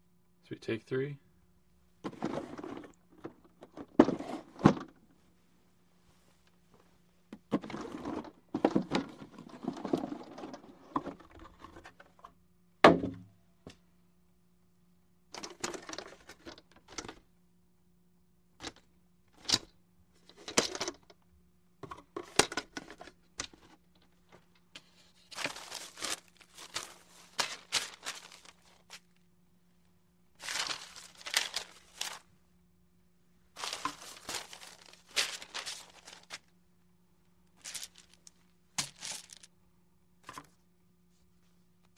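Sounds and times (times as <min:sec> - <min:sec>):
faint steady hum: 0:00.0 - 0:41.9
loud thunk: 0:12.8 - 0:13.3
packaging rustling and crinkling: 0:24.8 - 0:29.2, 0:30.4 - 0:32.3, 0:33.6 - 0:36.5, 0:37.6 - 0:39.5.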